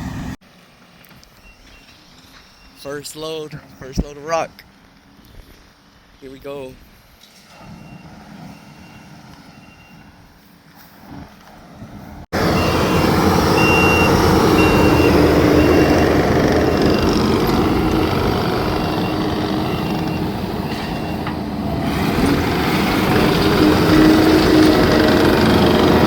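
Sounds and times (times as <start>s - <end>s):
truck engine running: 0.0s - 0.4s, 12.3s - 26.0s
truck reversing alarm beeping: 7.4s - 10.5s, 12.4s - 26.0s.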